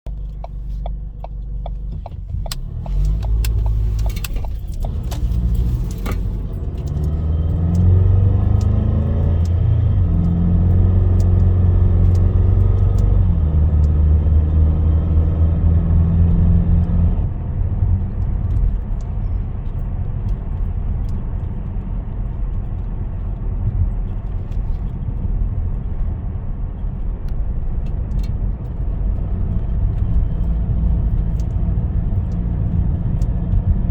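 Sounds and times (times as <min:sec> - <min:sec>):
car engine droning under acceleration: 0:00.0 - 0:33.9
clicks and rattles: 0:00.1 - 0:09.6.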